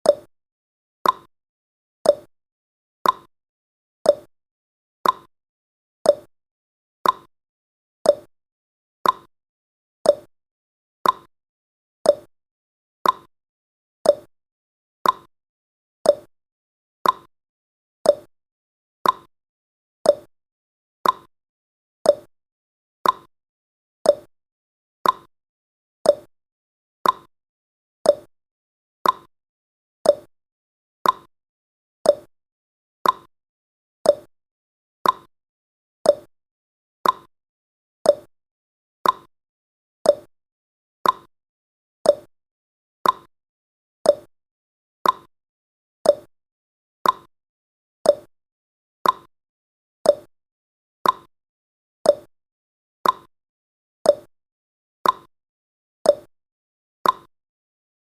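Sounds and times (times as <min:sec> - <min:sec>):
timer tick-tock clicks: 0:00.0 - 0:00.3, 0:01.0 - 0:01.3, 0:02.0 - 0:02.3, 0:03.0 - 0:03.3, 0:04.0 - 0:04.3, 0:05.0 - 0:05.3, 0:06.0 - 0:06.3, 0:07.0 - 0:07.3, 0:08.0 - 0:08.3, 0:09.0 - 0:09.3, 0:10.0 - 0:10.3, 0:11.0 - 0:11.3, 0:12.0 - 0:12.3, 0:13.0 - 0:13.3, 0:14.0 - 0:14.3, 0:15.0 - 0:15.3, 0:16.0 - 0:16.3, 0:17.0 - 0:17.3, 0:18.0 - 0:18.3, 0:19.0 - 0:19.3, 0:20.0 - 0:20.3, 0:21.0 - 0:21.3, 0:22.0 - 0:22.3, 0:23.0 - 0:23.3, 0:24.0 - 0:24.3, 0:25.0 - 0:25.3, 0:26.0 - 0:26.3, 0:27.0 - 0:27.3, 0:28.0 - 0:28.3, 0:29.0 - 0:29.3, 0:30.0 - 0:30.3, 0:31.0 - 0:31.3, 0:32.0 - 0:32.3, 0:33.0 - 0:33.3, 0:34.0 - 0:34.3, 0:35.0 - 0:35.3, 0:36.0 - 0:36.3, 0:37.0 - 0:37.3, 0:38.0 - 0:38.3, 0:39.0 - 0:39.3, 0:40.0 - 0:40.3, 0:41.0 - 0:41.3, 0:42.0 - 0:42.3, 0:43.0 - 0:43.3, 0:44.0 - 0:44.3, 0:45.0 - 0:45.3, 0:46.0 - 0:46.3, 0:47.0 - 0:47.3, 0:48.0 - 0:48.3, 0:49.0 - 0:49.3, 0:50.0 - 0:50.3, 0:51.0 - 0:51.3, 0:52.0 - 0:52.3, 0:53.0 - 0:53.3, 0:54.0 - 0:54.3, 0:55.0 - 0:55.3, 0:56.0 - 0:56.3, 0:57.0 - 0:57.3.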